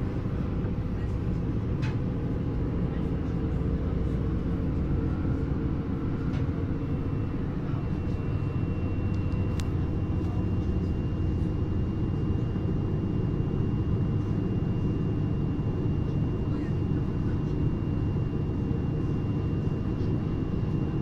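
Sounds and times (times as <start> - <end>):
click: 9.1 - 9.7.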